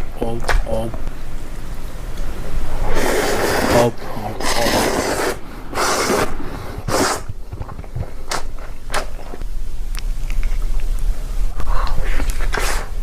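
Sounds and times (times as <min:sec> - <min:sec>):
chewing clicks and mouth smacks: 0:07.8 - 0:11.1.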